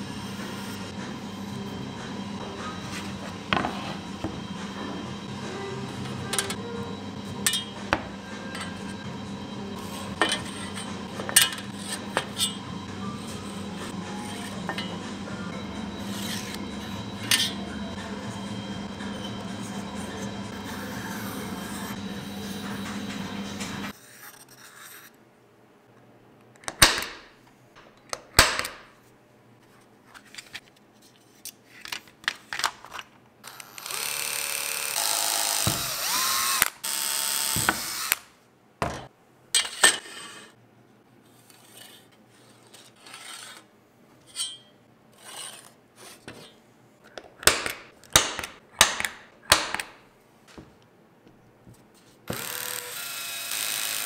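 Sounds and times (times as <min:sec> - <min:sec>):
power tool running: 0:33.4 - 0:38.3, 0:52.3 - 0:54.0.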